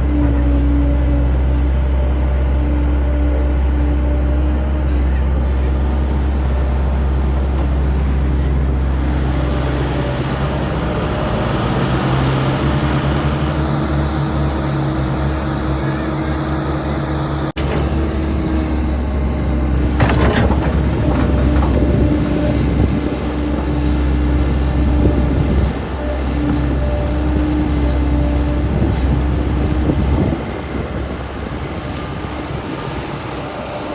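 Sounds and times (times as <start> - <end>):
heavy machine engine running: 0.0 - 33.9
clattering noise: 17.6 - 23.0.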